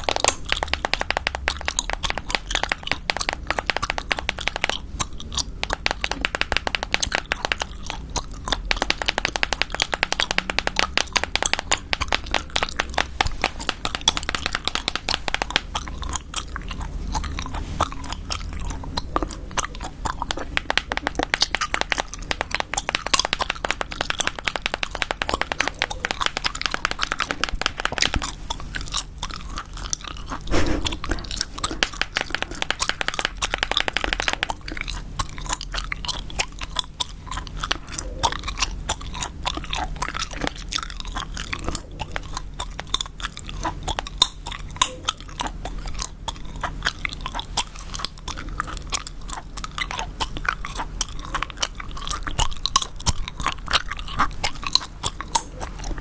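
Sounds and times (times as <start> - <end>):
gum chewing wet smacking: 0.0 - 56.0.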